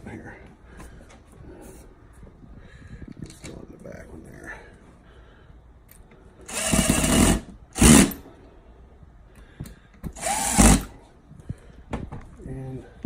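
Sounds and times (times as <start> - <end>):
power drill bursts: 6.5 - 8.2, 10.1 - 11.0.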